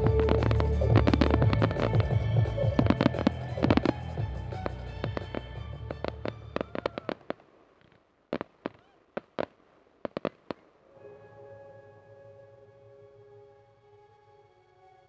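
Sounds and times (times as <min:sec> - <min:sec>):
music soundtrack: 0:00.0 - 0:07.1, 0:10.9 - 0:15.0
fireworks bangs and crackles: 0:00.0 - 0:10.8.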